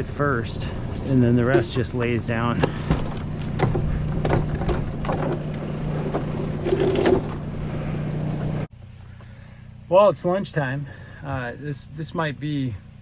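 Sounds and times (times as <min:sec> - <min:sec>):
engine idling: 0:00.0 - 0:13.0
knocks and clatter: 0:01.5 - 0:07.5.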